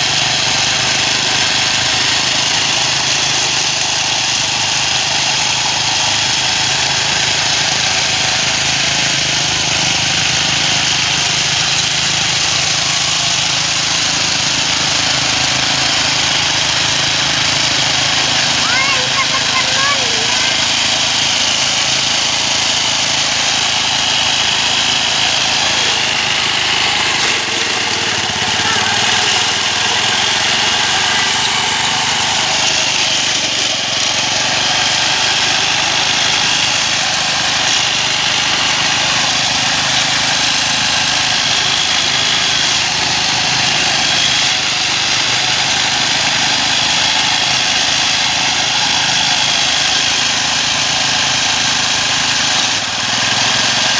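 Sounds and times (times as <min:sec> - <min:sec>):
lawn mower engine running: 0:00.0 - 0:53.9.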